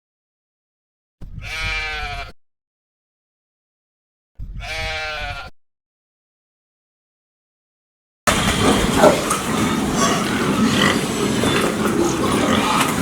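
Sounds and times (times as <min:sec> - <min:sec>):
sheep or goat bleating: 0:01.4 - 0:02.4, 0:04.6 - 0:05.5.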